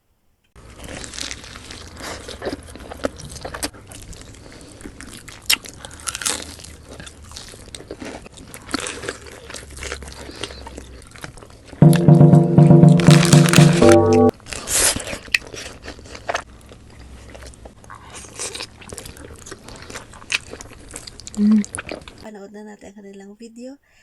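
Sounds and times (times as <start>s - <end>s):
crunchy bites and chewing: 0.6s - 11.5s, 14.6s - 22.2s
loud music: 11.8s - 14.3s.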